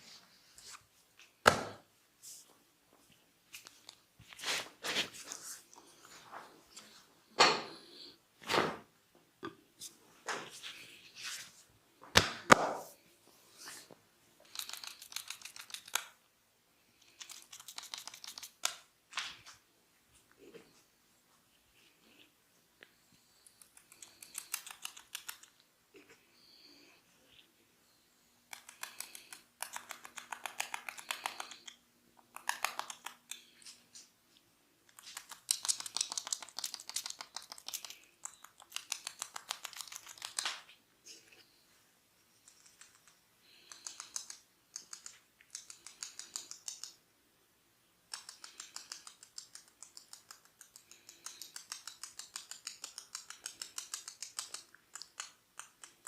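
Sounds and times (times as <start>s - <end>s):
fingers rubbing hair crackling: 17.1s - 18.8s.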